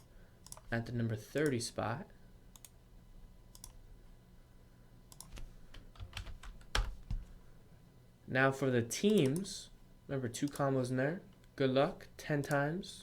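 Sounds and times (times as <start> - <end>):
computer keyboard clicks: 0.4 - 0.7, 3.5 - 3.8, 5.1 - 7.3.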